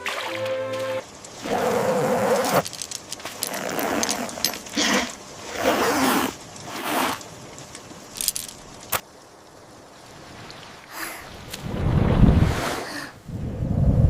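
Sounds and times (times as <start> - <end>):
rustling scraping noises: 1.1 - 8.9.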